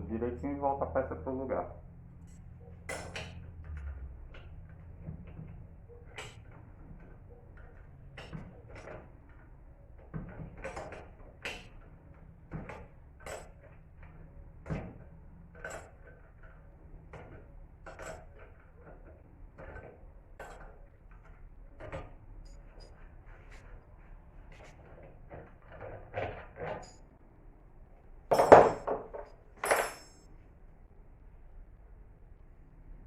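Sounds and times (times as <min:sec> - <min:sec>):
metallic clinks of hand tools: 0:28.3 - 0:30.3.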